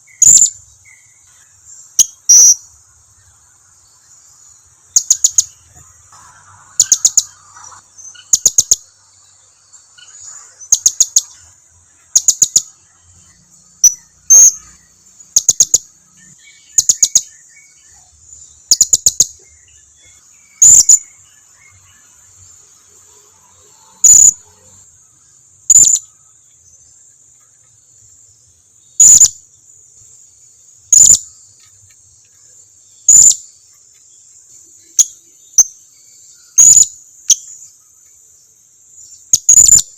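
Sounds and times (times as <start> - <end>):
faint insect hum: 0.0 - 39.9
parrot high chirps: 20.6 - 21.0, 29.0 - 29.4.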